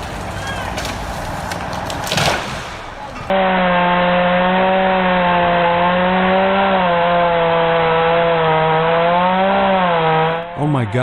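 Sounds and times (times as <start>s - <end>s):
chainsaw at full throttle: 3.3s - 10.5s.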